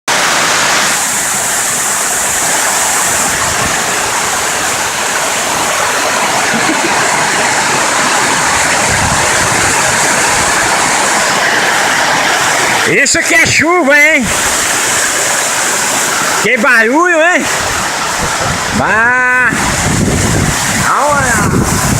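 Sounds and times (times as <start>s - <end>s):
heavy rain on shed: 0.1s - 21.9s.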